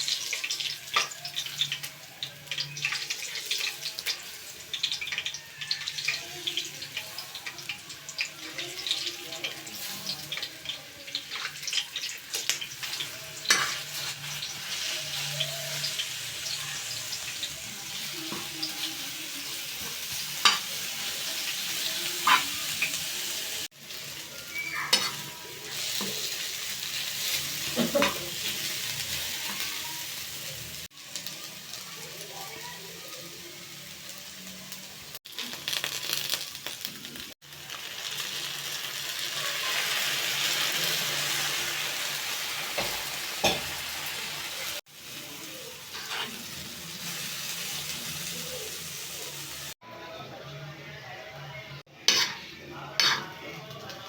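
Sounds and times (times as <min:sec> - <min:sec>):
food frying in oil: 0:00.0 - 0:49.8
utensil scraping a pan: 0:45.9 - 0:46.5, 0:52.1 - 0:53.3.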